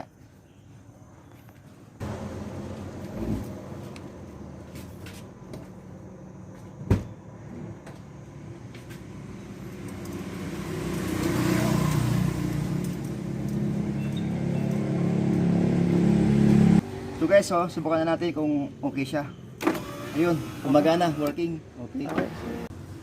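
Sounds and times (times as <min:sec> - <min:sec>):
car mechanical hum: 0:02.0 - 0:09.8
rising whir: 0:07.6 - 0:17.2.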